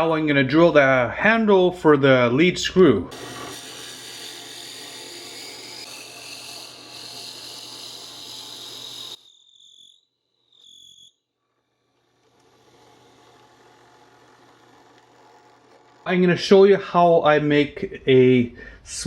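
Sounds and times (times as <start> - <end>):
drill running: 11.7 - 16.1.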